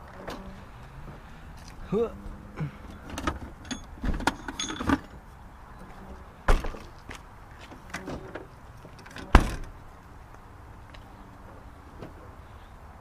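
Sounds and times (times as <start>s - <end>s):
metallic clinking and rattling: 2.9s - 5.2s.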